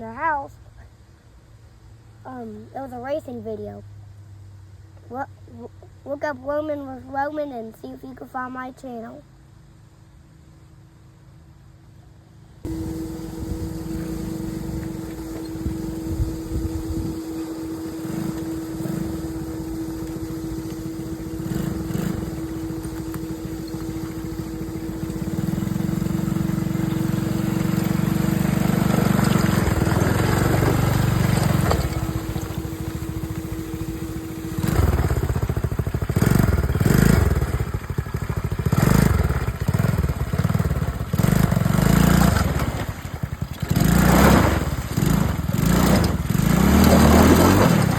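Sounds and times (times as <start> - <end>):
steady whine: 12.6 - 39.7
atv engine running: 12.6 - 47.9.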